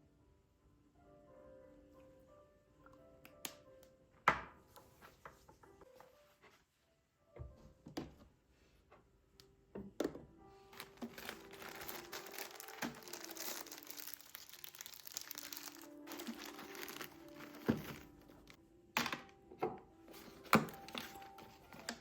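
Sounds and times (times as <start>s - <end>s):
soft background music: 0.0s - 22.0s
crinkling rustling handling: 10.6s - 18.6s, 20.1s - 22.0s
objects knocking when set down: 16.1s - 19.3s.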